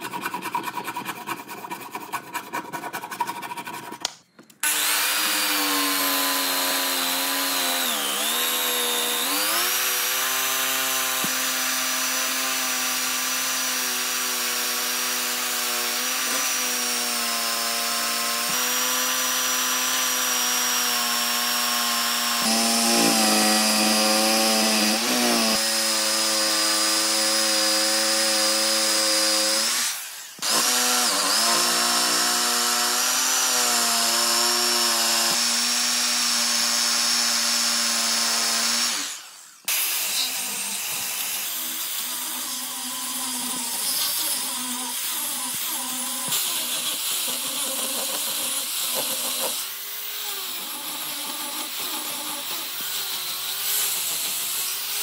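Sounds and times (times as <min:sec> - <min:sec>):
electric power tool motor running: 0:04.6 - 0:14.0, 0:22.0 - 0:35.5, 0:38.4 - 0:55.0.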